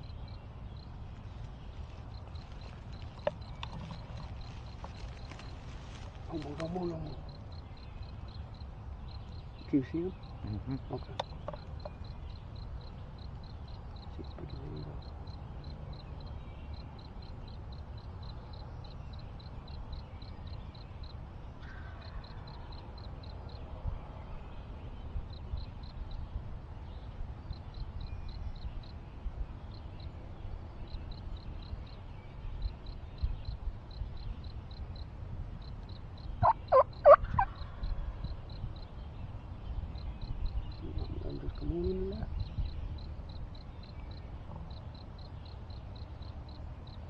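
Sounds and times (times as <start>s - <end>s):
turkey gobbling: 36.4s - 37.5s.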